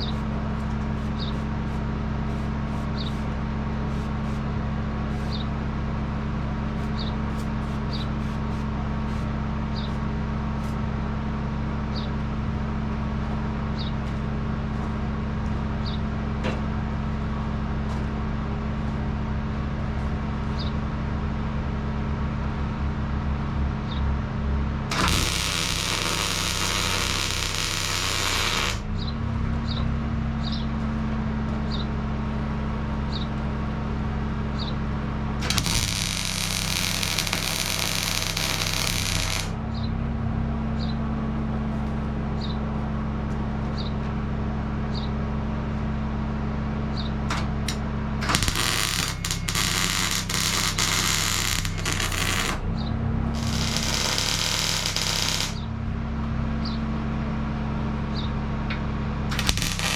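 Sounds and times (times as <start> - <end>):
arc welding crackle: 0.0 - 4.4, 6.8 - 10.0, 24.9 - 28.9, 35.4 - 39.6, 47.7 - 52.7, 53.4 - 55.6, 59.3 - 59.9
low hum: 0.0 - 43.0, 46.4 - 58.2, 59.2 - 59.9.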